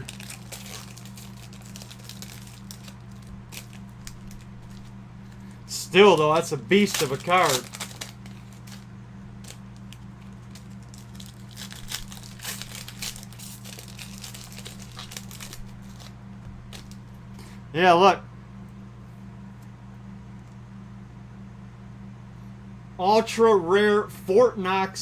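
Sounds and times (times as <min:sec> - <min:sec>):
plastic packaging crinkling: 0:00.0 - 0:17.2
low electrical hum: 0:00.0 - 0:25.0.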